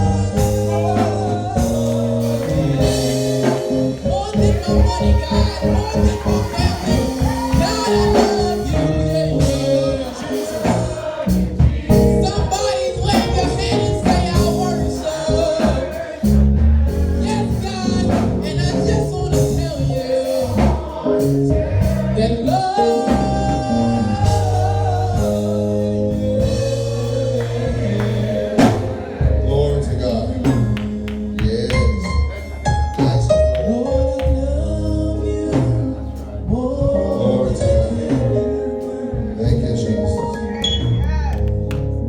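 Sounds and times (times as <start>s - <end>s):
person singing: 0.0s - 10.8s
drums: 0.0s - 29.6s, 30.4s - 34.7s, 35.5s - 40.0s
choir voices: 0.0s - 40.9s
bass: 0.0s - 42.0s
organ or keyboard: 0.0s - 42.0s.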